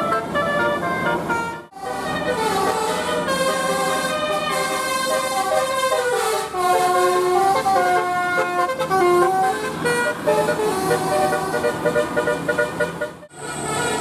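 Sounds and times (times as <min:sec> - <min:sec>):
bus air horn playing a tune: 0:00.0 - 0:14.0.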